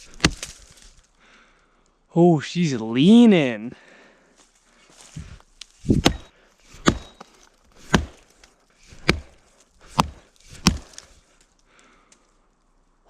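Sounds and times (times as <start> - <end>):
axe chopping into tree trunk: 0.0 - 0.6, 5.8 - 11.1.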